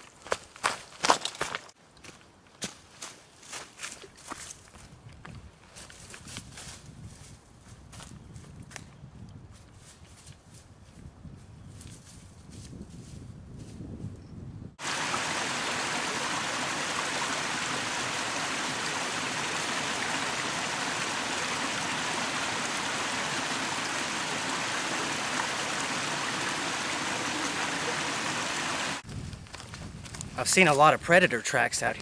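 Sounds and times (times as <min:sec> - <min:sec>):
flowing creek water: 0:14.8 - 0:29.0.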